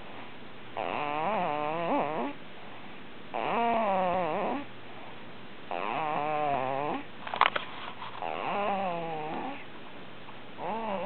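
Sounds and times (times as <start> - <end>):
person snoring: 8.2 - 9.6, 10.6 - 11.0.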